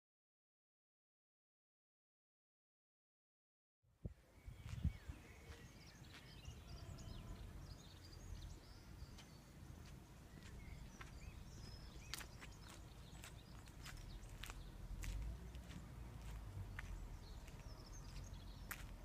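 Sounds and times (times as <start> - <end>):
small birds chirping: 4.0 - 19.0.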